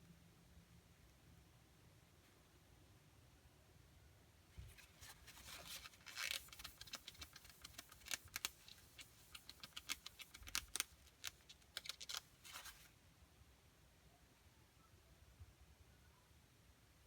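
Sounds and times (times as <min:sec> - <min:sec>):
fountain pen clicks and rubs: 0:05.4 - 0:12.8.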